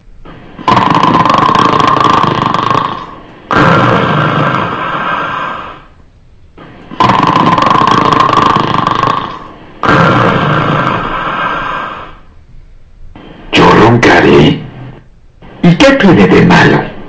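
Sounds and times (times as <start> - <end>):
person snoring loudly: 0.6 - 5.9, 6.9 - 12.2.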